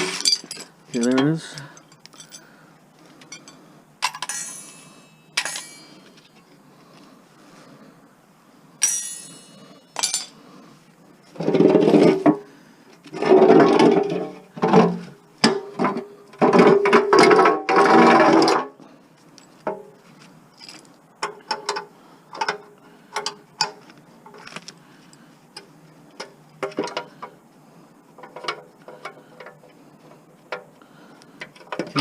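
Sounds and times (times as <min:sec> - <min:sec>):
tools clinking against metal: 0:00.0 - 0:02.5, 0:03.2 - 0:06.2, 0:08.8 - 0:10.4.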